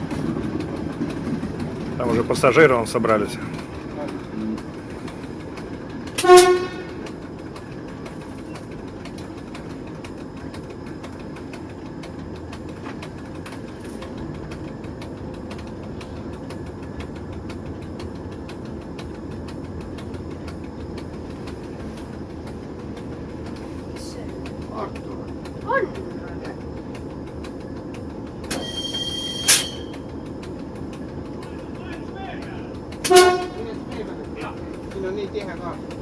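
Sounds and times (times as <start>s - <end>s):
diesel engine running: 0.0s - 36.0s
locomotive horn toot: 6.2s - 7.0s, 28.5s - 30.0s, 33.0s - 33.7s.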